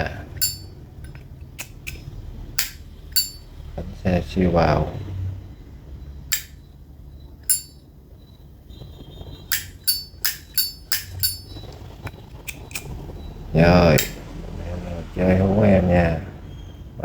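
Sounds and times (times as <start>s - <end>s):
metal lighter lid clacking: 0.4s - 2.0s, 2.6s - 3.4s, 6.3s - 6.6s, 7.4s - 7.8s, 9.5s - 11.6s, 12.5s - 12.9s, 14.0s - 14.2s.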